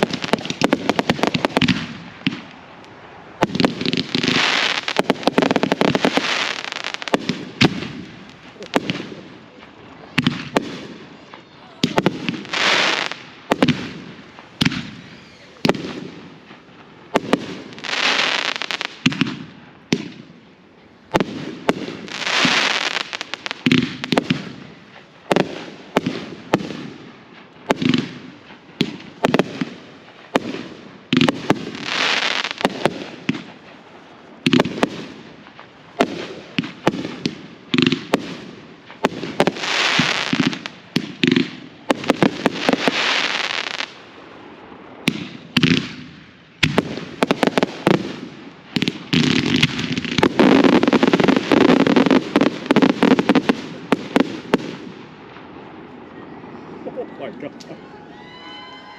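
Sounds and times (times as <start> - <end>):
firework crackling hiss: 0.0 - 20.2, 21.1 - 55.8.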